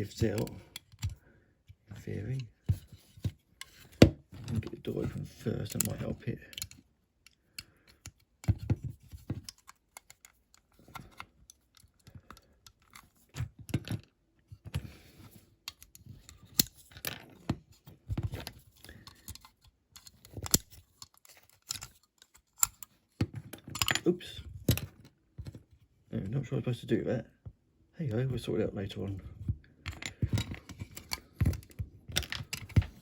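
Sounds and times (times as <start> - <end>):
small tool clicking and scraping: 5.7 - 13.4, 14.8 - 24.0.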